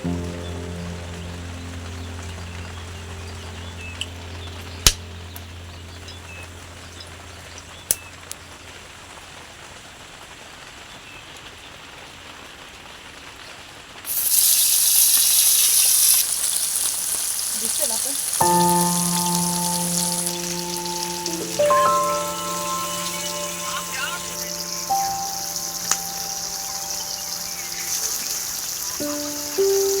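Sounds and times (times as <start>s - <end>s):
low hum: 0.0s - 8.6s
oil sizzling in a frying pan: 0.0s - 30.0s.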